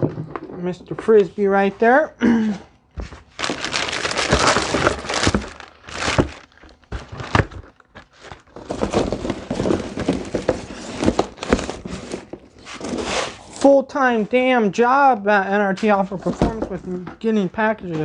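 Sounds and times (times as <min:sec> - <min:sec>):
packaging crinkling and rustling: 0:03.0 - 0:13.7.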